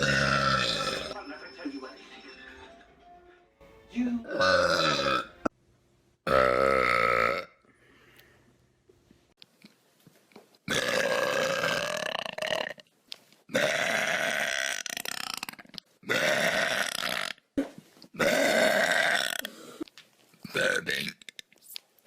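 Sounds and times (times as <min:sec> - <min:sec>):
loud human burps: 0:00.0 - 0:01.2, 0:04.3 - 0:05.5, 0:06.3 - 0:07.6, 0:10.7 - 0:12.8, 0:13.5 - 0:17.4, 0:18.2 - 0:19.8, 0:20.5 - 0:21.3.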